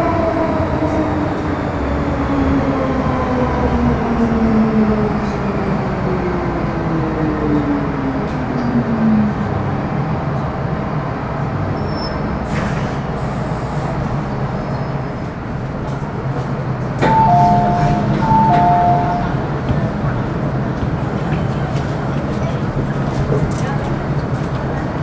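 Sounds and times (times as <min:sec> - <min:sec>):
steady train hum: 0:00.0 - 0:25.0
two-tone electronic chime: 0:17.1 - 0:19.3.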